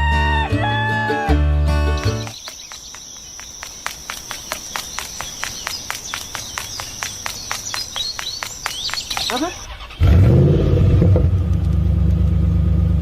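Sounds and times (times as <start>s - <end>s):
insects trilling: 2.0s - 10.0s
short insect chirps: 2.0s - 10.0s.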